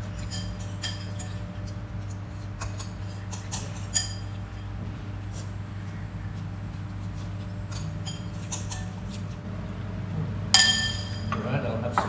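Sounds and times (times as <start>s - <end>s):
steady low hum: 0.0s - 12.0s
cutlery clinking against plate: 0.2s - 4.6s, 7.1s - 9.4s, 10.6s - 12.0s.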